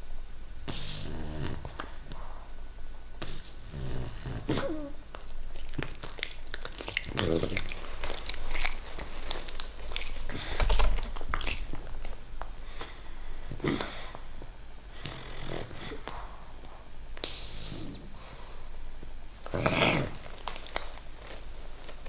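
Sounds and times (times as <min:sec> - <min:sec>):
puppy snoring: 0:00.6 - 0:02.5, 0:03.2 - 0:05.0, 0:06.9 - 0:11.7, 0:12.6 - 0:20.4
nasal clicks and snuffles: 0:05.1 - 0:22.0.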